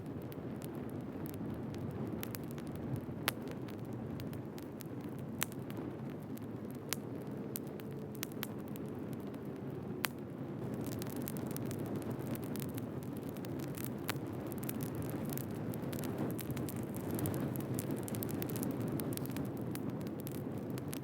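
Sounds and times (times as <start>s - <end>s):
firewood burning with crackles: 0.0s - 21.0s.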